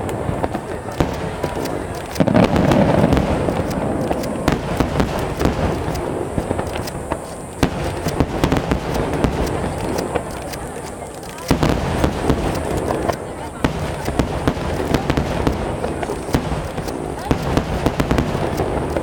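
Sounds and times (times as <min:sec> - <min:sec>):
rumbling detonations: 0:00.0 - 0:10.4, 0:11.5 - 0:19.0
fireworks cracking and popping: 0:00.0 - 0:19.0
firework boom: 0:00.4 - 0:10.3.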